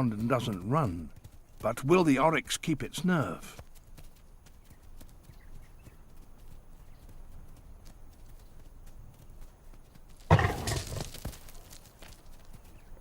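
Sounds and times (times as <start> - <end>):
hooves on dry ground: 0.0 - 13.0
loud animal noise: 10.3 - 11.0.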